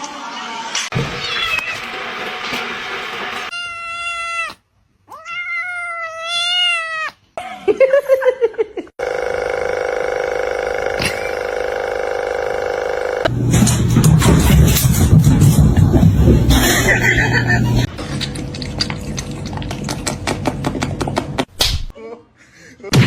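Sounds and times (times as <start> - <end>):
cat meowing: 3.5 - 7.2.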